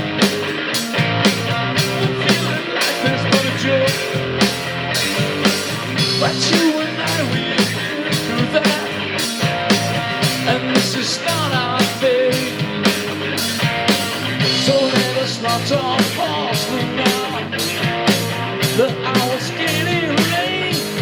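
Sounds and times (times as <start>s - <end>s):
bass: 0.0s - 21.0s
electric guitar with bent notes: 0.0s - 21.0s
steady drum beat: 0.0s - 21.0s.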